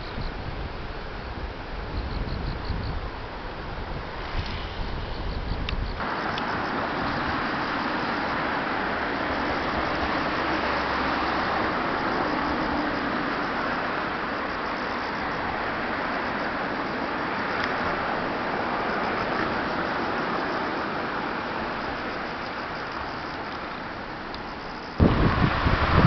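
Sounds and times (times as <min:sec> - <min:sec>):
river rushing: 0:06.0 - 0:26.0.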